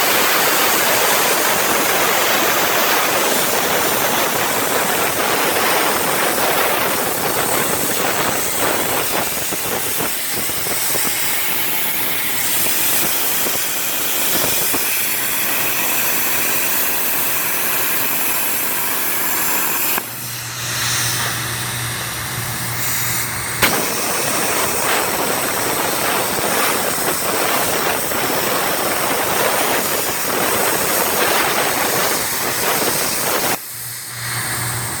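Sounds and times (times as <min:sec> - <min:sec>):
machine hissing: 0:00.0 - 0:35.0
low machine hum: 0:18.7 - 0:31.0.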